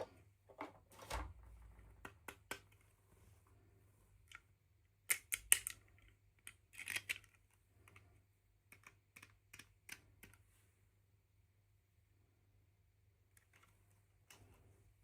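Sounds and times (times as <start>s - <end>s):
plastic pieces clicking: 5.0s - 8.0s, 8.7s - 10.4s.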